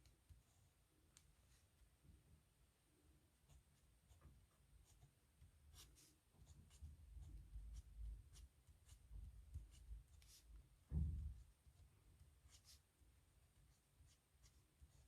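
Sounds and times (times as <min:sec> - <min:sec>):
pen scratching on paper: 0:04.8 - 0:10.5, 0:11.4 - 0:15.0.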